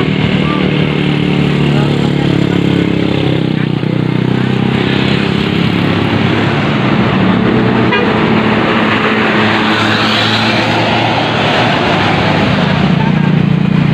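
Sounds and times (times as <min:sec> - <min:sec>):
bus engine running: 0:00.0 - 0:13.9
musical bus horn: 0:07.8 - 0:08.3.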